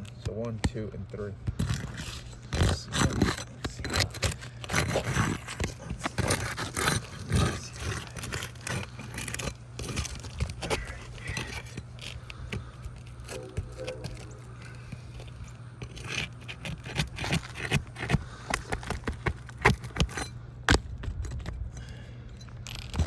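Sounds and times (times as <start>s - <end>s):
tool scraping under roof shingle: 0.0s - 23.0s.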